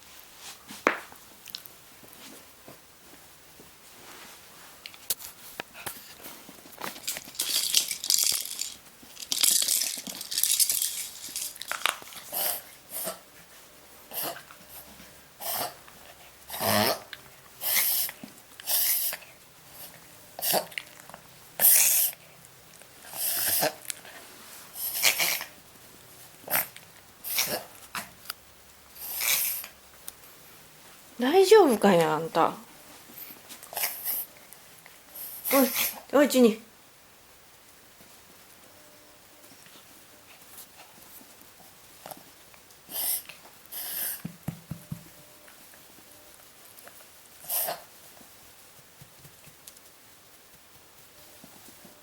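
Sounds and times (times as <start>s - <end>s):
dog reverse sneezing: 16.5s - 19.2s, 42.9s - 44.2s.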